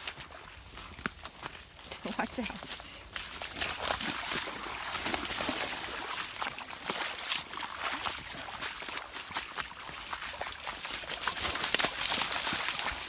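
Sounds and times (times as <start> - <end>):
water splashing: 2.0 - 13.0.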